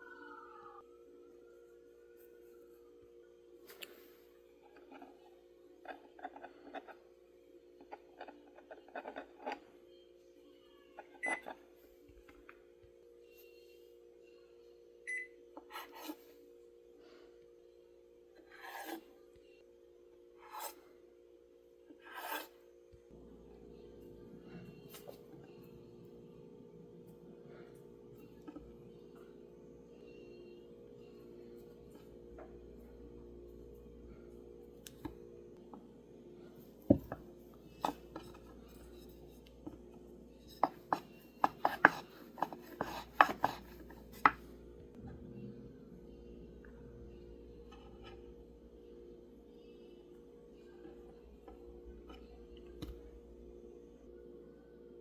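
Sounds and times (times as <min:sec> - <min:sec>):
steady low hum: 0:22.7 - 0:55.0.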